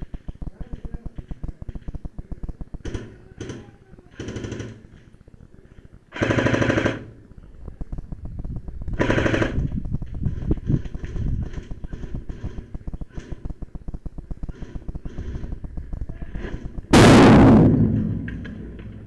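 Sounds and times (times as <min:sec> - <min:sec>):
footsteps pattering: 0:00.0 - 0:03.4
airsoft gun automatic bursts: 0:00.0 - 0:05.2, 0:06.0 - 0:18.2.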